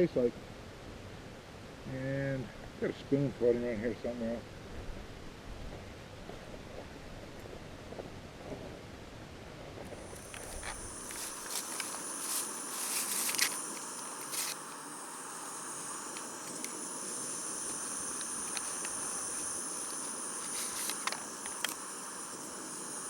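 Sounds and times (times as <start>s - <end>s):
constant hiss: 0.0s - 23.0s
camp utensils clicking and scraping: 9.9s - 23.0s
high-pitched insect trill: 9.9s - 23.0s.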